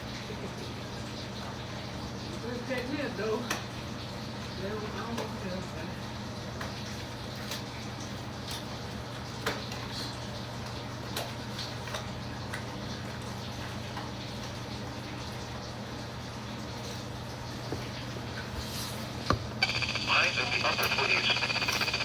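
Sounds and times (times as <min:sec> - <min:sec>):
steady low hum: 0:19.6 - 0:22.0.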